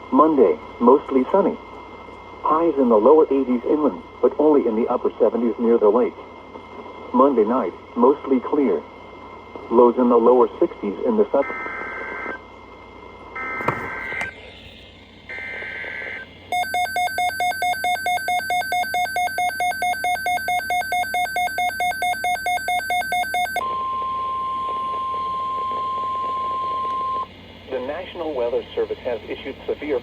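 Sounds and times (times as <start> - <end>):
pulsing electronic alarm beeps: 15.3 - 27.3.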